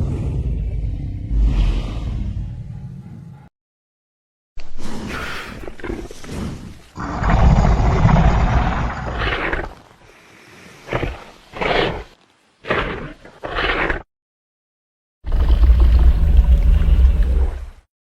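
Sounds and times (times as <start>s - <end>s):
deep dinosaur roar: 0.0s - 3.4s, 7.0s - 9.8s.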